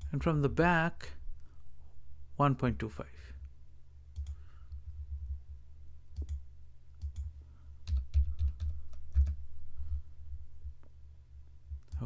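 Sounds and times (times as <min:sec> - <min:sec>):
steady low hum: 0:00.0 - 0:12.0
mouse and keyboard clicks: 0:06.2 - 0:06.4.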